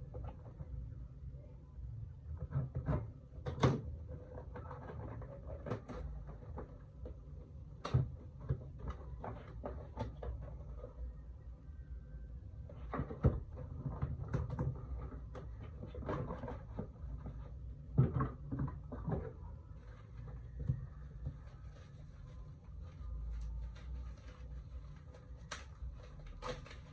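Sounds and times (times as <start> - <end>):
cardboard and tape rustling: 7.8 - 10.9, 12.7 - 26.9.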